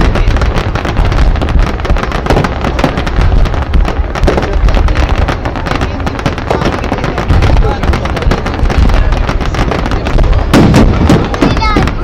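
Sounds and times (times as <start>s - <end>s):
fireworks bangs and crackles: 0.0s - 12.0s.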